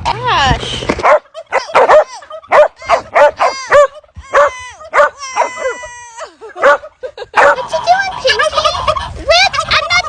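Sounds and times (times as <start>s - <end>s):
farm animal yelping: 1.1s - 6.0s.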